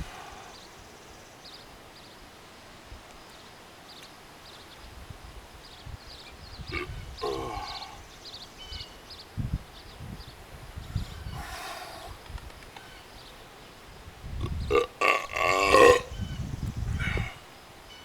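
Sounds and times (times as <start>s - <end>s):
throaty burp: 6.7s - 8.0s, 14.4s - 16.2s.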